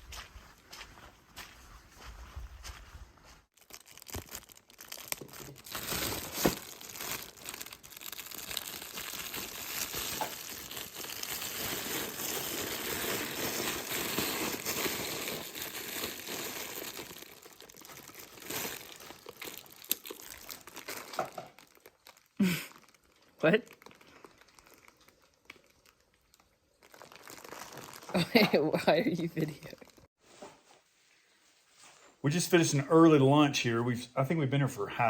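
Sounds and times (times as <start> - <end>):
plastic packaging crinkling: 3.6 - 30.0.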